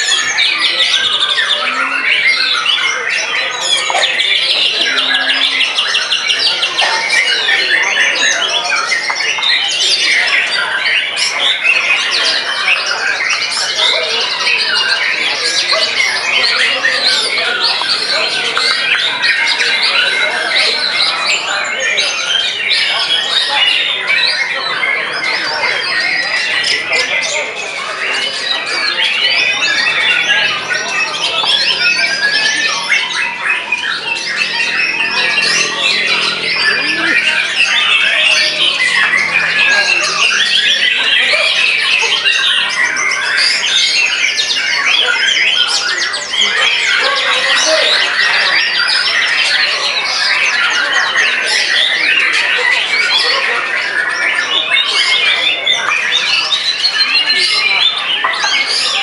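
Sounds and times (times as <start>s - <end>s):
birds singing whistled trills: 0.0s - 59.0s.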